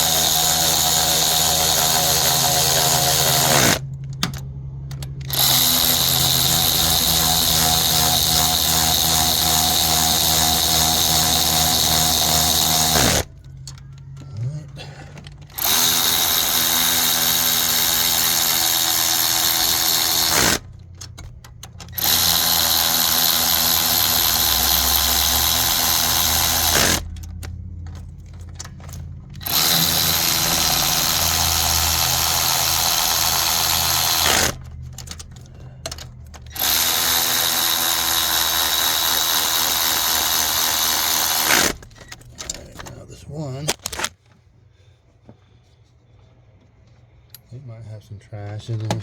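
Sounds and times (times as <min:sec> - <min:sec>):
power tool running bolt in: 0:00.0 - 0:13.8, 0:15.4 - 0:21.0, 0:21.6 - 0:28.0, 0:28.8 - 0:35.3, 0:35.9 - 0:42.5.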